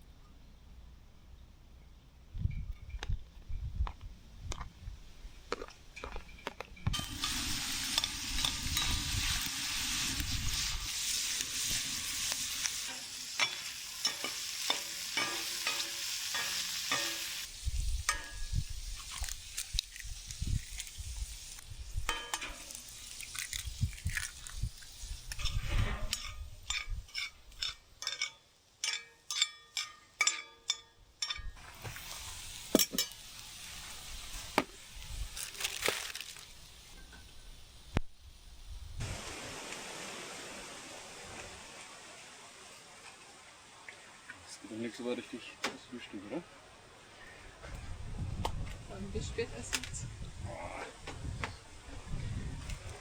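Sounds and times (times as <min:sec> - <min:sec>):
food sizzling in a frying pan: 0:06.9 - 0:27.7, 0:31.6 - 0:41.0
utensil scraping a pan: 0:25.3 - 0:29.5.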